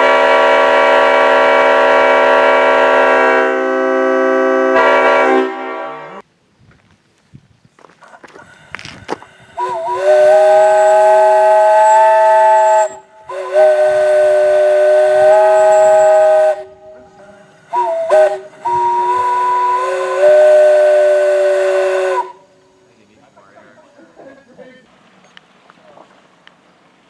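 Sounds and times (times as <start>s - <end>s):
multi-chime train air horn: 0.0s - 6.2s, 9.4s - 22.9s.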